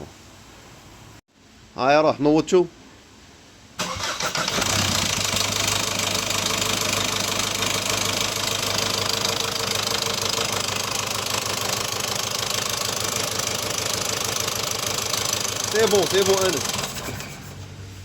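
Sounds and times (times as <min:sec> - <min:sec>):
diesel engine idling: 0:03.8 - 0:18.0
heavy engine knocking: 0:05.3 - 0:17.1.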